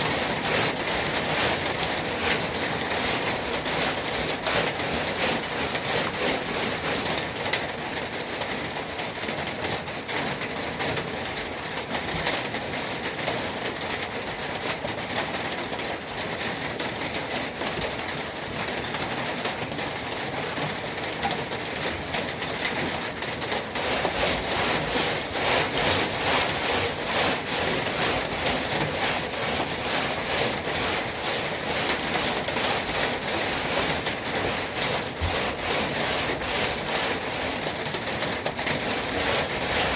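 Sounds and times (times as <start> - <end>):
sandpaper rasping on metal: 0.0 - 7.4, 8.2 - 8.6, 23.6 - 39.9.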